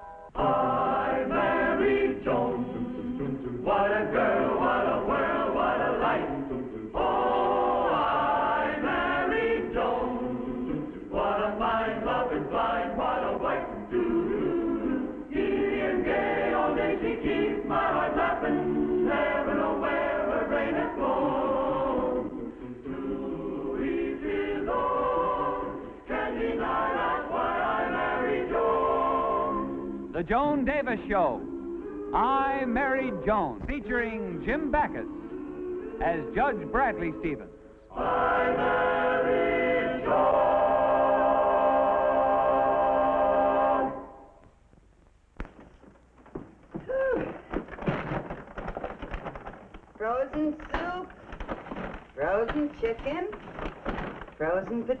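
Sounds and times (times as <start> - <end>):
choir singing: 0.2 - 30.2, 31.0 - 33.4, 34.4 - 44.4.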